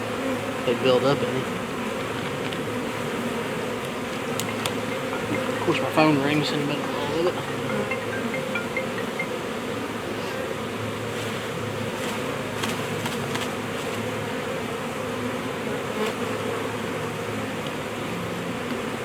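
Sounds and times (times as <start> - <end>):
bees buzzing: 0.0 - 19.0
faint clicks: 3.8 - 5.2.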